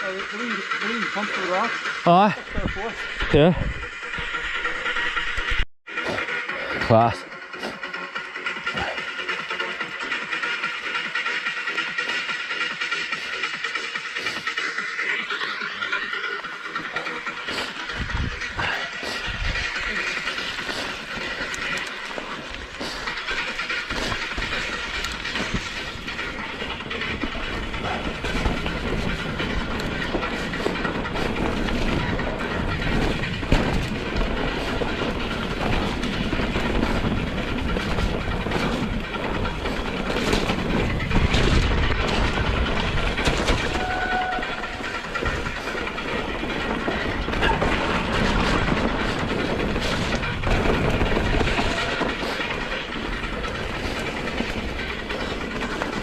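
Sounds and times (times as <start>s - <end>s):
bike rattling and knocking: 8.3s - 56.0s
bike tyre and air rushing: 17.4s - 56.0s.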